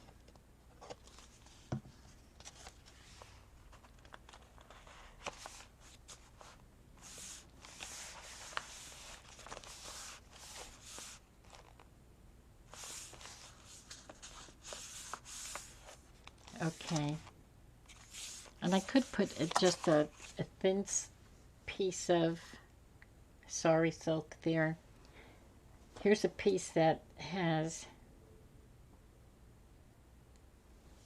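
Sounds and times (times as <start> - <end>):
paper and tape rustling: 0.0 - 11.9, 12.7 - 17.3, 17.9 - 20.5.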